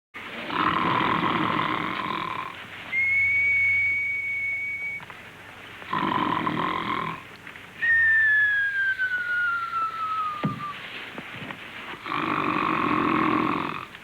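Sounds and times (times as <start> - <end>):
high whistle on breath out: 2.9 - 5.1, 7.8 - 10.8
man snoring raspily: 5.9 - 7.2, 12.0 - 13.9.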